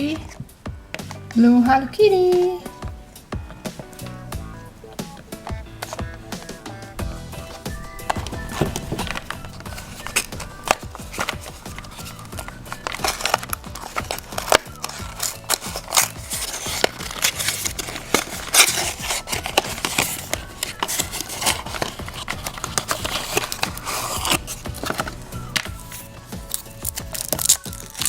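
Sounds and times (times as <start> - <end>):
background music: 0.0 - 28.0
packaging crinkling and crackling: 7.5 - 28.0.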